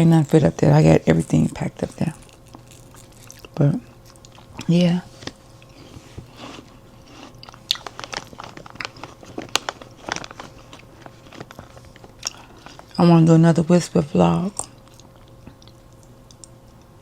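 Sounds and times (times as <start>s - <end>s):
person chewing food: 2.1s - 13.0s, 14.6s - 17.0s.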